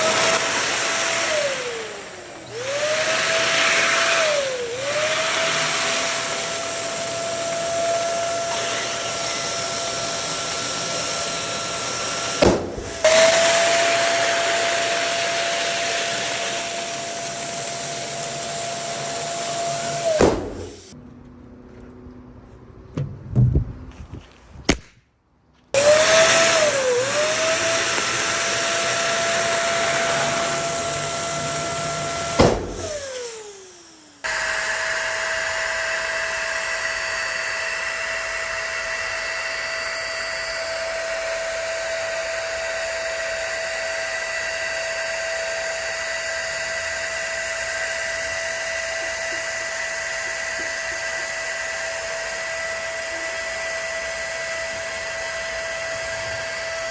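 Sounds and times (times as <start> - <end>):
electric air pump running: 0.0 - 21.0, 25.8 - 56.9
sharp pop: 12.4 - 12.9, 20.2 - 20.7, 24.7 - 25.0, 32.4 - 32.8.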